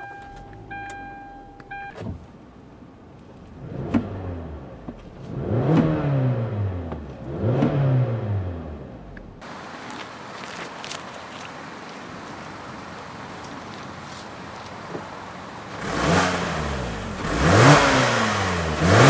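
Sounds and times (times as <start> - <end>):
electronic warning beeps: 0.0 - 2.0
car engine revving: 3.5 - 9.5, 14.9 - 19.0.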